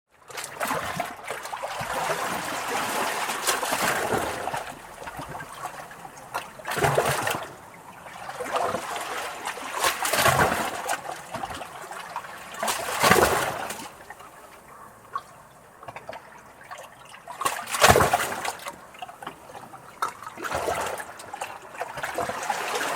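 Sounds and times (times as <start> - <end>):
water trickling: 0.2 - 22.9
waves lapping against rocks: 0.2 - 22.9
larger waves washing in: 1.4 - 14.1.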